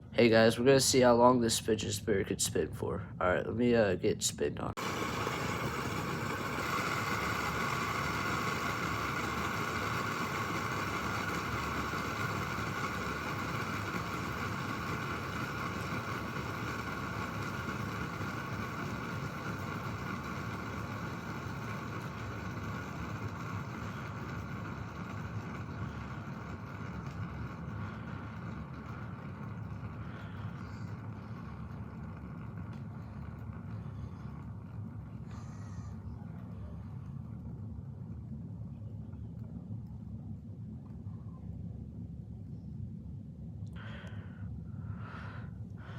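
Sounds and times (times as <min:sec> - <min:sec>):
fidget spinner whirring: 0:04.7 - 0:41.1.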